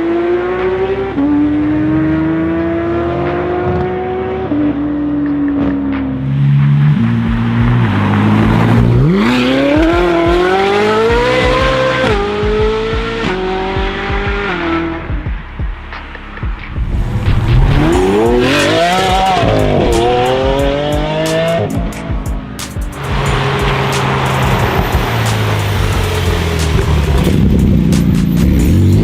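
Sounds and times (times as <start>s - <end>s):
car engine revving: 0.0s - 29.0s
exhaust crackles: 5.2s - 29.0s.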